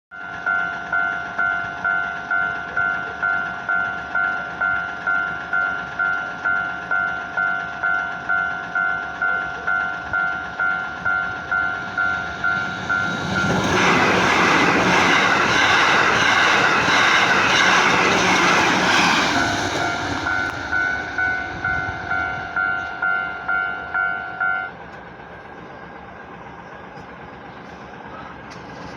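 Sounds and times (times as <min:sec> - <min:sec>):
train passing rumble: 0:00.2 - 0:28.9.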